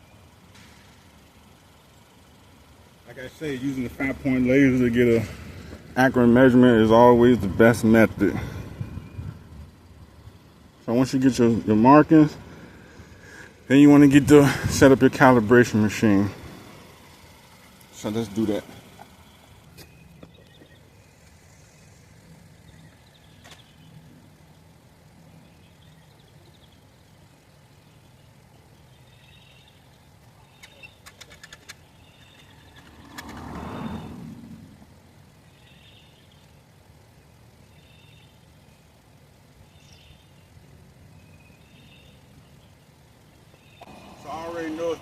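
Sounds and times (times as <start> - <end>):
low engine hum: 0.0 - 45.0
vehicle passing: 3.0 - 20.2, 32.4 - 35.2, 43.8 - 45.0
quick clicks: 30.6 - 33.5.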